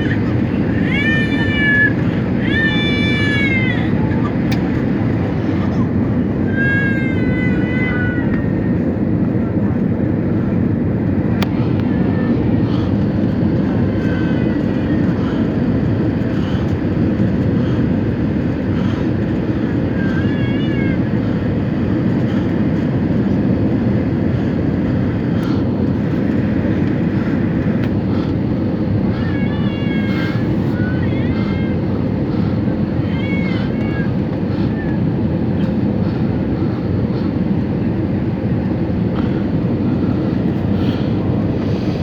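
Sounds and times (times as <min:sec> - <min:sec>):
faint high-pitched cries: 0:00.0 - 0:09.4, 0:11.5 - 0:17.3, 0:18.0 - 0:23.4, 0:28.9 - 0:36.2
airliner cabin engine rush: 0:00.0 - 0:42.0.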